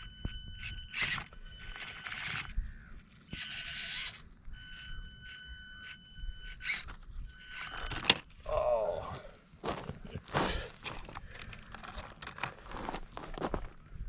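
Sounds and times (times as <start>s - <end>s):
small electric motor whine: 0.0s - 8.3s.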